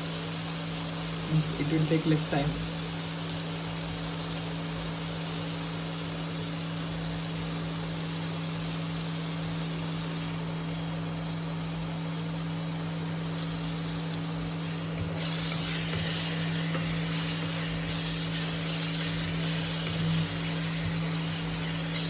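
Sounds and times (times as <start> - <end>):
cooktop hum: 0.0 - 22.0
onions sizzling in oil: 0.0 - 22.0.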